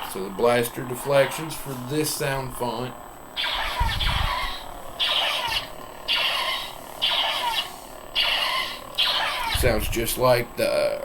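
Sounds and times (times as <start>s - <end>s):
lightsaber zaps: 3.4s - 10.2s.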